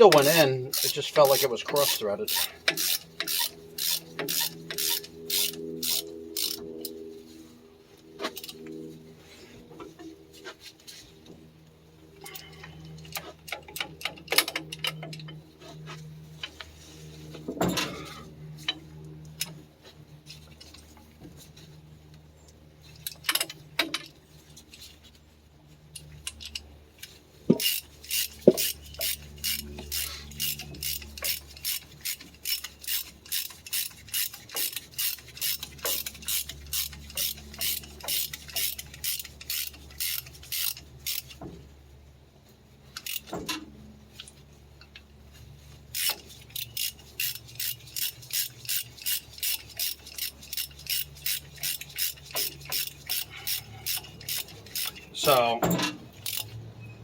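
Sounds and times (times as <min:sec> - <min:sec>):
ratchet wrench clicking: 0:00.0 - 0:06.9, 0:26.2 - 0:41.4, 0:43.0 - 0:43.3, 0:45.9 - 0:55.2, 0:56.1 - 0:56.6
low steady hum: 0:00.0 - 0:57.0.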